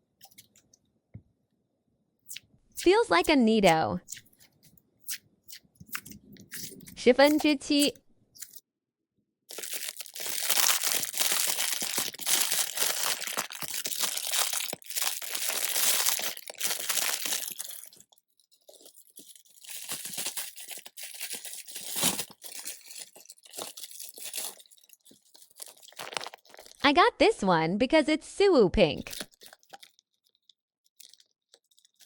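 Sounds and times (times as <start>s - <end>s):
plastic packaging crinkling: 9.5s - 26.8s, 29.0s - 32.0s.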